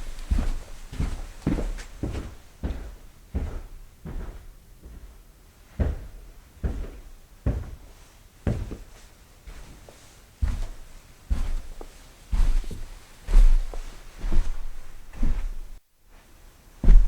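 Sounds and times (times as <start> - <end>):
footsteps on carpet: 0.0 - 17.0.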